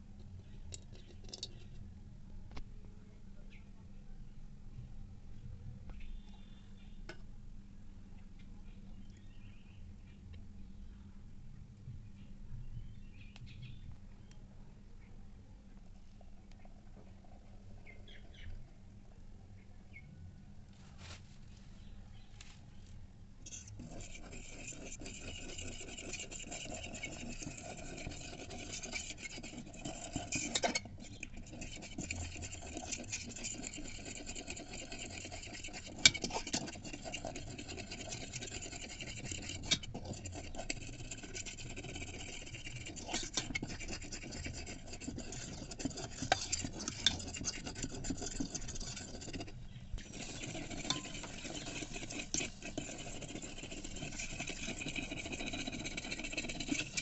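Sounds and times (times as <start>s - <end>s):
spoon scraping and stirring: 0.4s - 1.9s, 23.4s - 57.0s.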